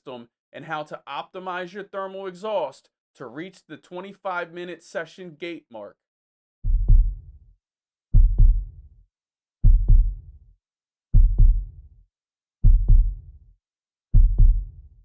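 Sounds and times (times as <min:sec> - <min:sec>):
heartbeat thumps: 0:06.6 - 0:07.4, 0:08.1 - 0:08.9, 0:09.6 - 0:10.4, 0:11.1 - 0:11.9, 0:12.6 - 0:13.4, 0:14.1 - 0:15.0.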